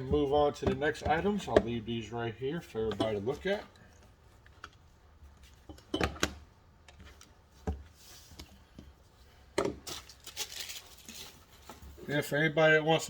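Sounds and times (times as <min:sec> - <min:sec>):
tools knocking on hard surface: 0:00.0 - 0:01.8.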